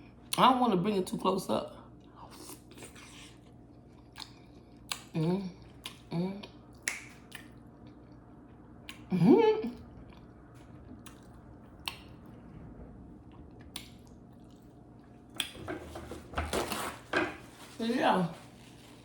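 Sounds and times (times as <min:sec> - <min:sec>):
person chewing: 0:02.0 - 0:09.1, 0:09.9 - 0:12.2, 0:13.3 - 0:15.6
lip smacks and mouth clicks: 0:04.0 - 0:05.2, 0:05.8 - 0:08.2, 0:08.8 - 0:09.1, 0:10.1 - 0:12.1, 0:13.6 - 0:14.6, 0:15.4 - 0:15.6
person humming mm: 0:05.2 - 0:06.6.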